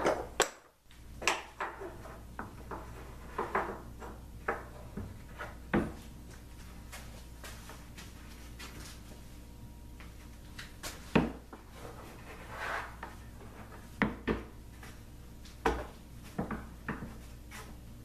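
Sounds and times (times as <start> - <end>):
wooden block scraping: 11.6 - 13.8.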